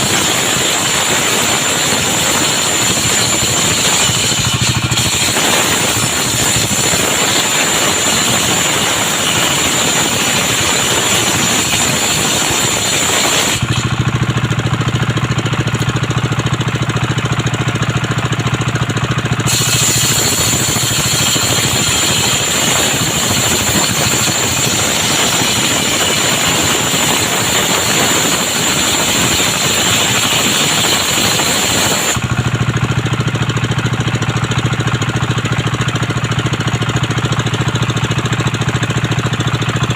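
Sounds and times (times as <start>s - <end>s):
saw blade ripping through wood: 0.0s - 16.0s, 19.3s - 33.0s
engine droning: 0.0s - 39.9s
free-spinning saw blade: 0.0s - 39.9s.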